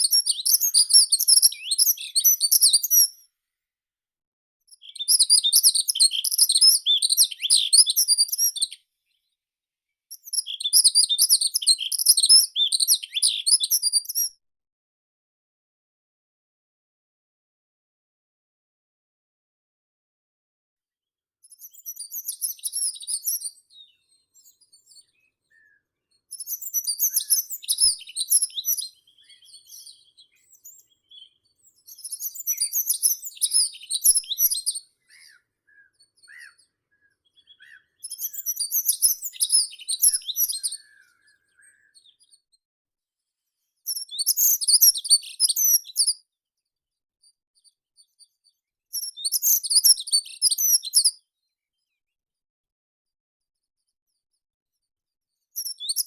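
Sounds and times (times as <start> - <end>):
songbird singing: 0.0 - 3.2, 4.8 - 8.8, 10.2 - 14.2, 21.8 - 42.3
faint soft bird calls: 21.6 - 42.4.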